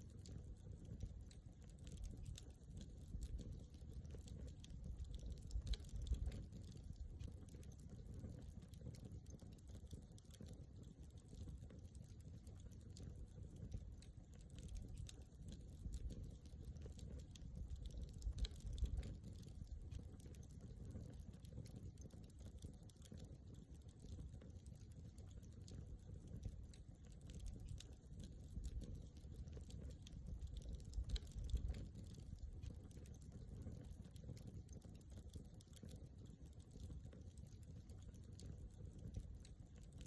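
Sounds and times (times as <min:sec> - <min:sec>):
campfire crackling and popping: 0:00.0 - 0:40.0.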